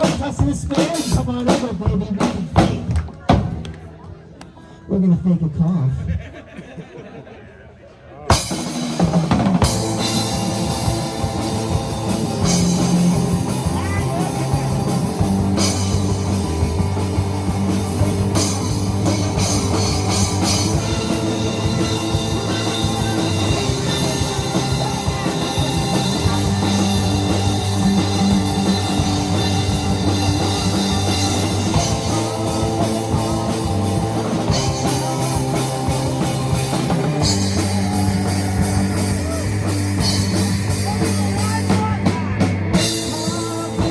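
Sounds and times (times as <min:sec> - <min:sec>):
drum kit: 0:00.0 - 0:03.8, 0:08.3 - 0:43.9
electric guitar: 0:08.3 - 0:43.9.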